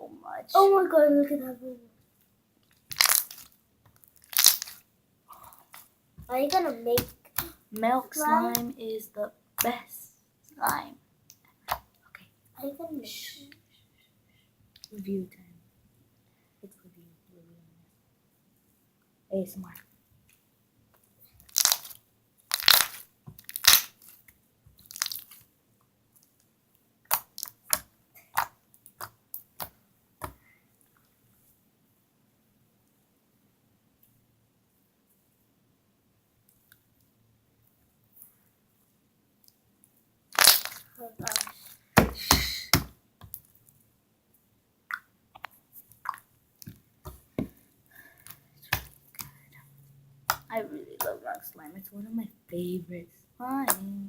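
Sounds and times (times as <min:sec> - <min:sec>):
hands squishing slime: 0:02.9 - 0:04.8, 0:22.5 - 0:24.0, 0:40.4 - 0:43.4, 0:45.9 - 0:49.4
slime squishing with wet clicks: 0:27.1 - 0:30.4.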